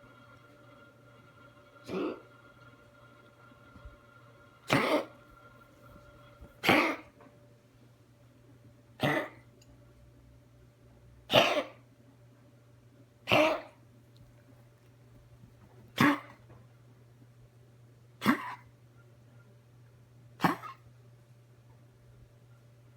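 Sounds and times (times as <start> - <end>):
pet coughing: 1.9 - 2.3, 4.7 - 5.2, 6.4 - 7.2, 9.0 - 9.4, 11.3 - 11.8, 13.2 - 13.8, 15.9 - 16.4, 18.2 - 18.7, 20.4 - 20.9.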